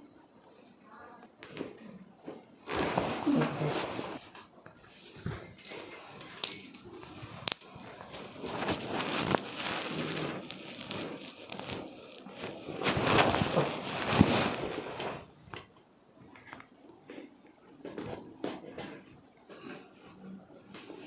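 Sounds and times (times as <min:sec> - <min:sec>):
hands rubbing in a massage: 0:02.6 - 0:15.3.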